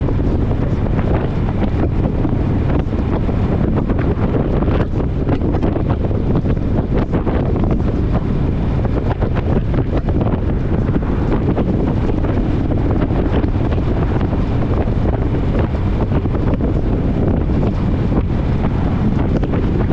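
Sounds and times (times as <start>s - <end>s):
strong wind buffeting microphone: 0.0s - 19.9s.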